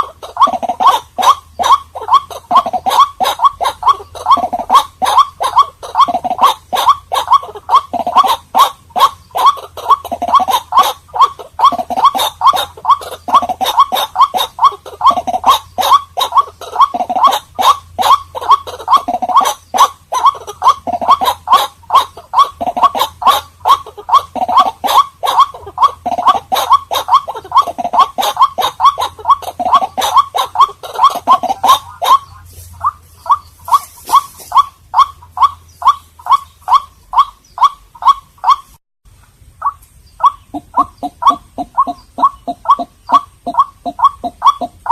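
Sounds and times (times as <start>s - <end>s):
waterhen calling: 0.0s - 44.9s.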